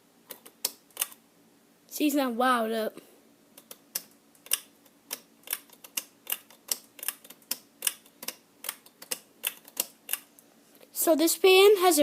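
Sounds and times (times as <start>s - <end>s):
faint steady hum: 0.0s - 12.0s
regular sharp clicking: 0.3s - 1.2s, 3.5s - 10.5s.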